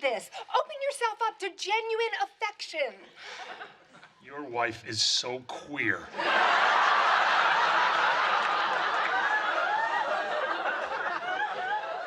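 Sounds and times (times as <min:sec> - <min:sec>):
studio audience laughing: 0:06.1 - 0:12.0.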